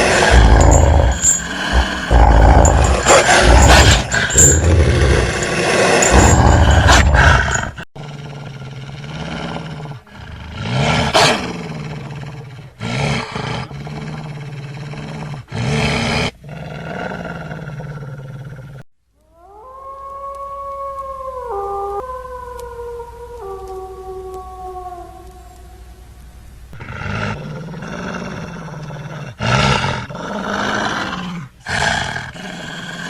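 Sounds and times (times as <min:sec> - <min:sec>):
wolf howling: 0:00.0 - 0:07.8, 0:19.3 - 0:26.2
wolves growling and snarling: 0:00.0 - 0:18.8, 0:26.7 - 0:33.0
low steady rumble: 0:20.6 - 0:26.8.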